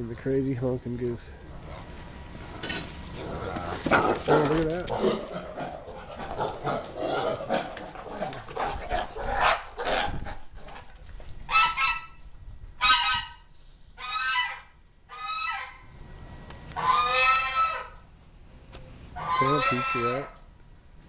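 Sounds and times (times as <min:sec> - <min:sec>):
rough pulsing scuffling: 0:01.5 - 0:09.5
goose honking: 0:11.5 - 0:12.1, 0:12.8 - 0:13.4, 0:14.0 - 0:15.8, 0:16.8 - 0:18.0, 0:19.2 - 0:20.4.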